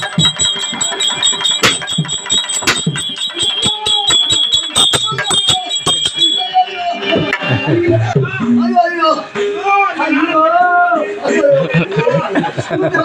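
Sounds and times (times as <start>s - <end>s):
sharp strikes: 0.0s - 6.4s
bells ringing: 0.0s - 8.7s
voices: 0.0s - 13.0s.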